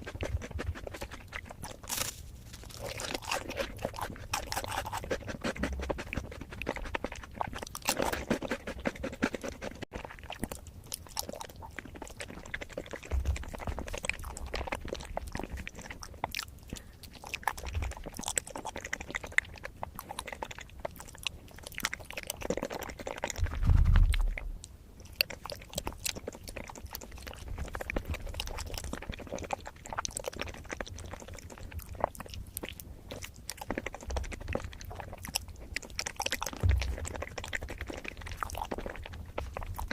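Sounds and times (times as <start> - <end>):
person chewing and crunching: 0.0 - 39.9
low thump: 23.6 - 24.4.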